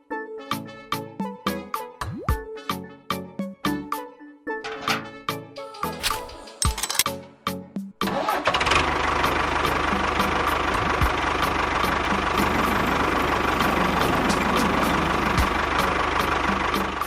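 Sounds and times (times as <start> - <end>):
small engine running: 8.1 - 17.0.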